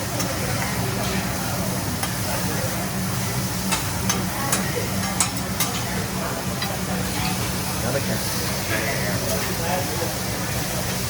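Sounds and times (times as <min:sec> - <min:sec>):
food sizzling on a griddle: 0:00.0 - 0:11.0.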